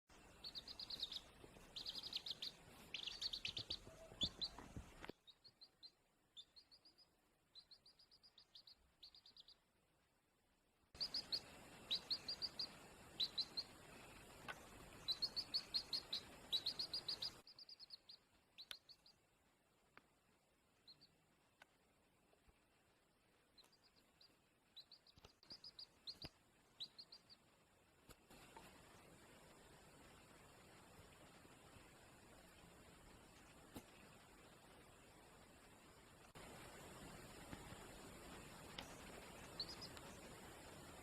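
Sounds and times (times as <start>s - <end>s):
baby chick peeping: 0.2s - 9.7s, 11.0s - 19.2s, 20.8s - 21.2s, 23.5s - 29.6s, 36.6s - 41.0s.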